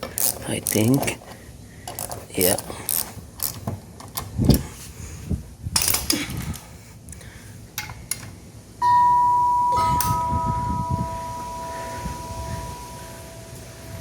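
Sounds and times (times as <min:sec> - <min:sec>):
clear ringing tone: 0:08.8 - 0:14.0.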